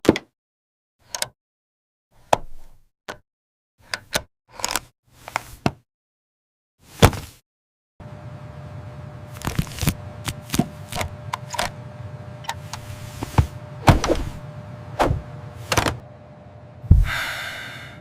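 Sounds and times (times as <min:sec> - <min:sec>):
steady background hum: 0:08.0 - 0:18.0.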